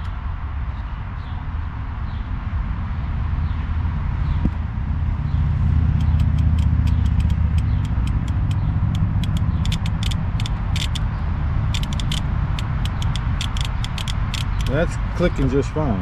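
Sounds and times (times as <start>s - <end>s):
sharp clicks: 5.9s - 11.1s, 11.7s - 15.5s
mower engine running: 5.9s - 15.6s.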